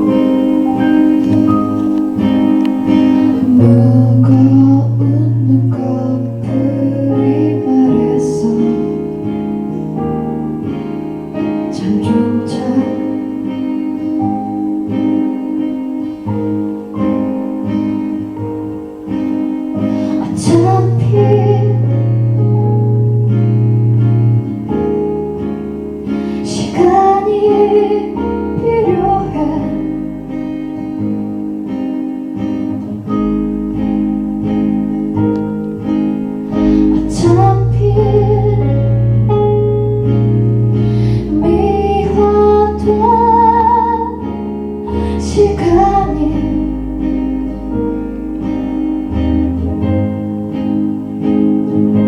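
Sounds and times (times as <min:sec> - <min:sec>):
gliding melody line: 0:00.0 - 0:08.8
bass line: 0:00.0 - 0:13.3, 0:16.3 - 0:52.0
acoustic guitar strumming: 0:00.0 - 0:52.0.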